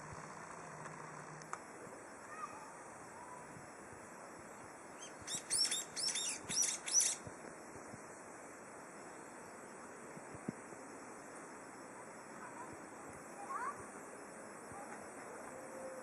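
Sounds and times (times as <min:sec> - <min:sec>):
faint steady hiss: 0:00.0 - 0:16.0
songbird twittering: 0:05.0 - 0:07.2.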